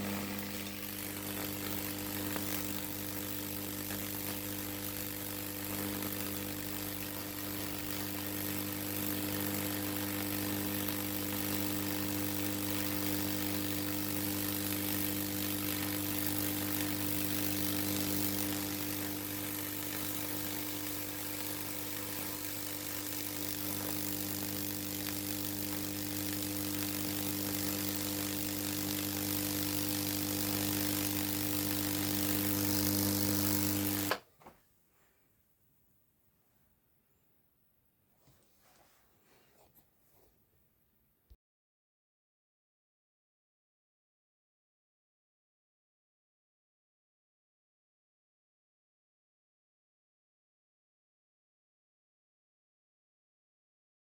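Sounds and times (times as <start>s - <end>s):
transformer buzzing hum: 0.0s - 34.2s.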